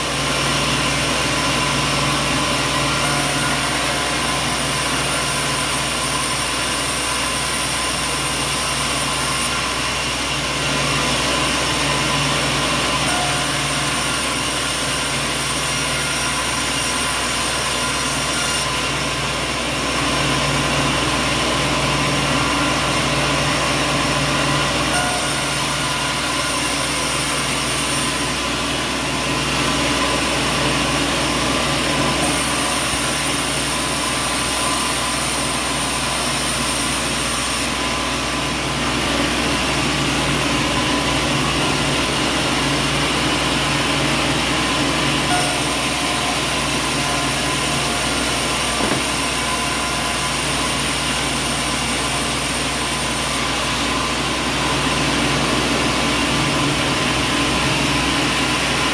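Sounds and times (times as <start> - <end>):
sawmill machinery din: 0.0 - 58.9.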